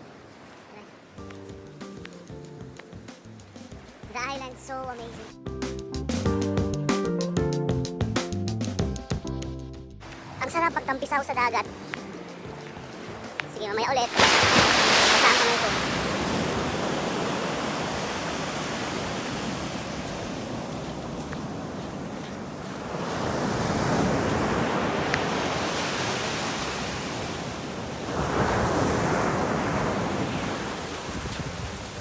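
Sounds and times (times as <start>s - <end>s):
ocean waves washing in: 0.0s - 1.3s, 2.8s - 5.3s, 10.0s - 32.0s
wind buffeting microphone: 10.0s - 32.0s.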